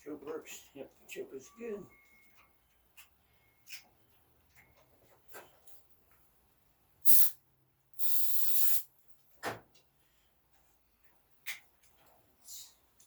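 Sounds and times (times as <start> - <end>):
aerosol spray can bursts: 7.0 - 7.4, 8.0 - 8.9.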